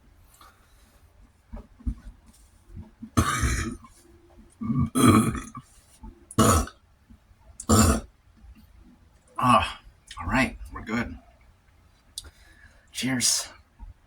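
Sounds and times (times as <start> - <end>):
man burping loudly: 3.2 - 3.8, 4.6 - 5.6, 6.3 - 6.8, 7.6 - 8.1.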